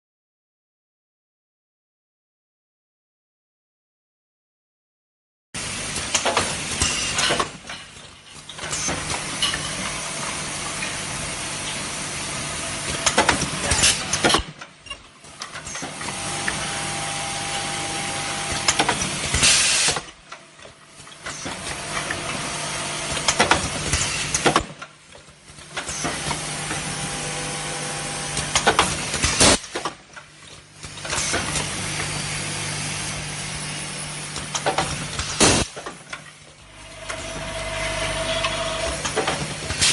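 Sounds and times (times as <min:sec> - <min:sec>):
sealing machine hissing: 0:18.1 - 0:20.1, 0:36.7 - 0:39.9.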